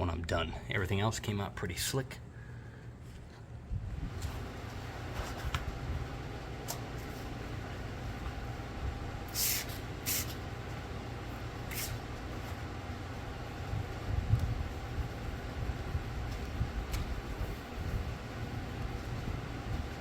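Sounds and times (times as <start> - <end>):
short hisses: 9.3 - 10.4.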